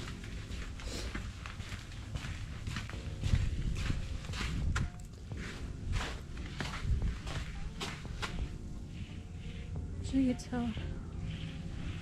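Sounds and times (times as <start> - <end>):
boots crunching through snow: 0.0 - 8.5.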